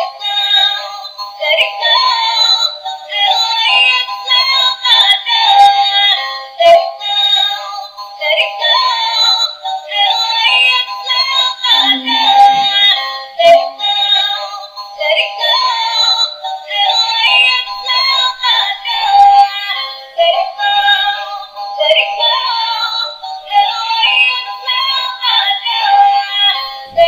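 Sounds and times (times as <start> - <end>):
electronic song from toy speaker: 5.7 - 27.0
synthesized singing voice: 11.4 - 16.2.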